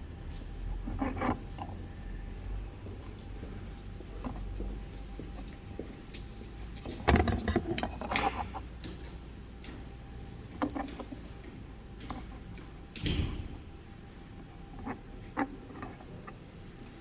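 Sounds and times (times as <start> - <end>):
metal parts clinking and rattling: 6.8 - 9.9.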